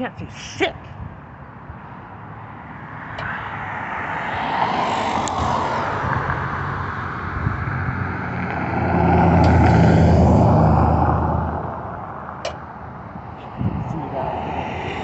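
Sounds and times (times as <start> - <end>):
heavy vehicle engine hum: 1.0 - 15.0
vehicle passing on snowy street: 2.1 - 15.0.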